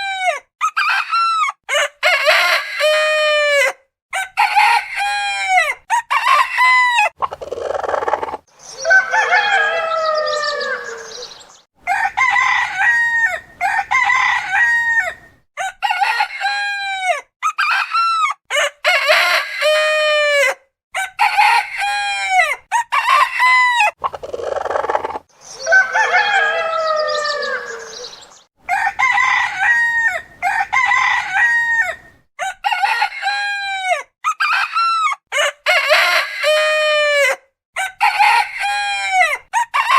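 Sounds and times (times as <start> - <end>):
rooster crowing: 1.7 - 7.2, 8.8 - 17.8, 18.8 - 24.0, 25.6 - 39.9.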